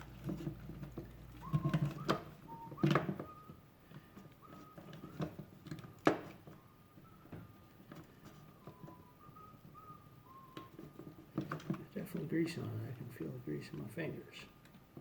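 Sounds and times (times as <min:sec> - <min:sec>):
person whistling a tune: 0:01.4 - 0:03.6, 0:04.3 - 0:05.1, 0:06.5 - 0:07.6, 0:08.4 - 0:11.0.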